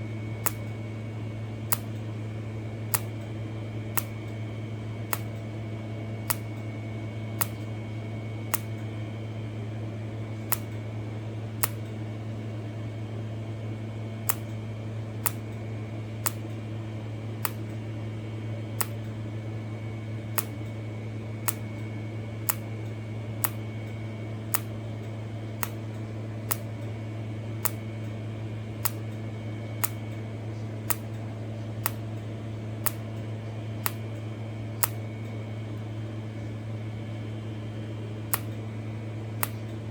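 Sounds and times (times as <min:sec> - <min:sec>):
steady hum: 0:00.0 - 0:39.9
spot welding arc clicks: 0:00.4 - 0:00.8, 0:01.7 - 0:02.1, 0:02.9 - 0:04.5, 0:05.1 - 0:05.6, 0:06.2 - 0:06.7, 0:07.3 - 0:07.8, 0:08.5 - 0:08.9, 0:10.4 - 0:10.9, 0:11.6 - 0:12.0, 0:14.2 - 0:14.6, 0:15.2 - 0:16.6, 0:17.4 - 0:17.8, 0:18.8 - 0:19.2, 0:20.2 - 0:30.2, 0:30.8 - 0:35.3, 0:38.3 - 0:38.7, 0:39.4 - 0:39.8.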